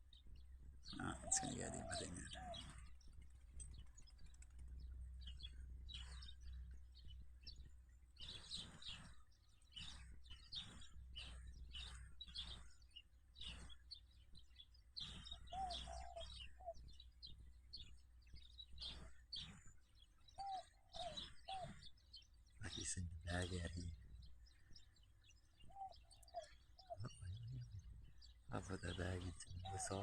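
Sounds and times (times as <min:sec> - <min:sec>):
sparrows chirping: 0:00.0 - 0:30.0
low warbled bird call: 0:00.9 - 0:03.0, 0:15.0 - 0:16.9, 0:20.4 - 0:22.0, 0:25.7 - 0:30.0.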